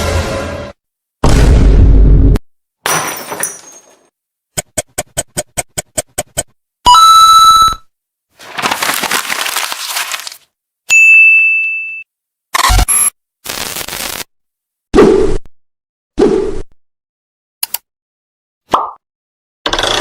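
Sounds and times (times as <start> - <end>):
crash sound effect: 0.0 - 2.4.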